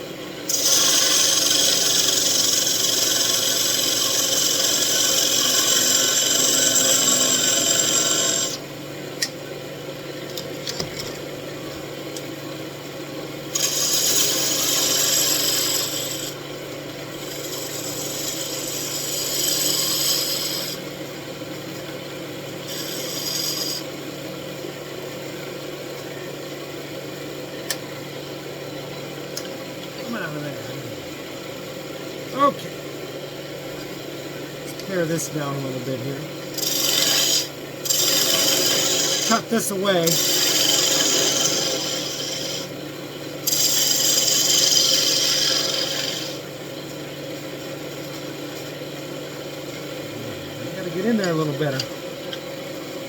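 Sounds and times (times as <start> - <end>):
tool hissing against spinning wood: 0.5 - 8.6, 13.5 - 16.4, 17.1 - 20.8, 22.6 - 24.0, 36.4 - 42.8, 43.4 - 46.5
wood lathe motor hum: 0.5 - 8.7, 13.5 - 21.0, 21.8 - 24.2, 34.6 - 46.6, 49.5 - 52.9.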